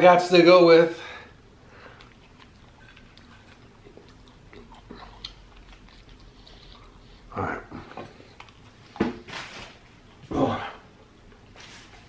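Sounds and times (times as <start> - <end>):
person chewing food: 1.4 - 9.1.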